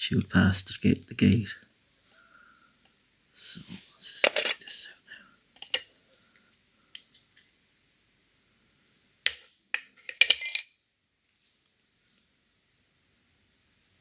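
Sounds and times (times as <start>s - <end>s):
small metal parts clinking: 4.2s - 4.7s, 9.3s - 10.8s.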